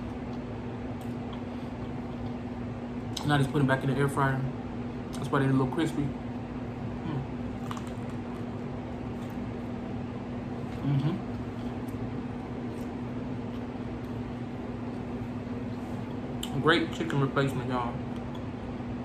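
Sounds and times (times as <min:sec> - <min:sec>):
man chewing crispy food: 0:06.8 - 0:09.8
man humming mm: 0:07.0 - 0:07.3, 0:10.8 - 0:11.3.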